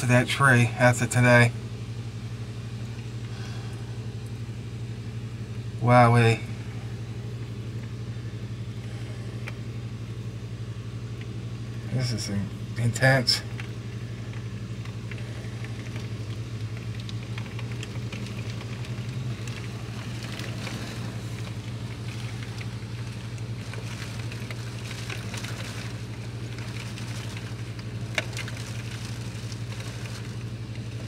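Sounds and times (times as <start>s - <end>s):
low hum: 0.0s - 31.0s
heavy rain falling: 15.0s - 31.0s.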